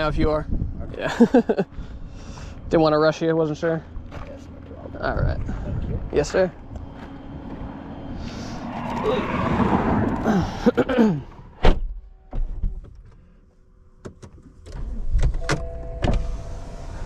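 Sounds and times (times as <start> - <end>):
vehicle noise falling in pitch: 6.2 - 11.6
car door thump: 11.6 - 12.9.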